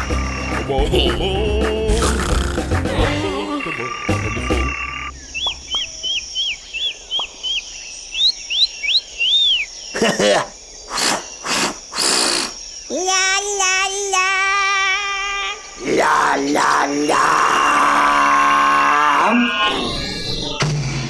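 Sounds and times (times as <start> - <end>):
cartoon chirps: 9.3 - 15.4, 19.3 - 20.7.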